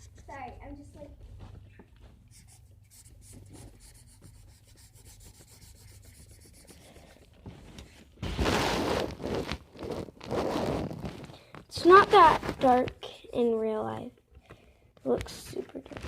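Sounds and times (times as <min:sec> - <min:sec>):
pencil rubbing on paper: 0:02.3 - 0:07.2.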